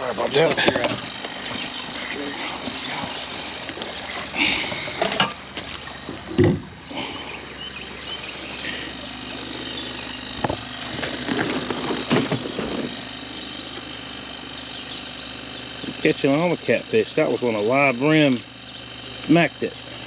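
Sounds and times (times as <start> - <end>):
faint steady hum: 0.0 - 20.0
knocks and thumps on a boat: 5.0 - 6.7.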